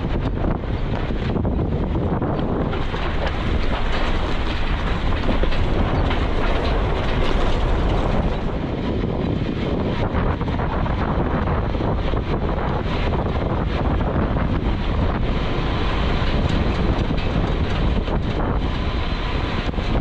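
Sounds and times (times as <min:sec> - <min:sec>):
knocks and rattles: 0:00.0 - 0:11.0, 0:11.9 - 0:20.0
engine and road rumble: 0:00.0 - 0:20.0
wind buffeting microphone: 0:00.0 - 0:20.0.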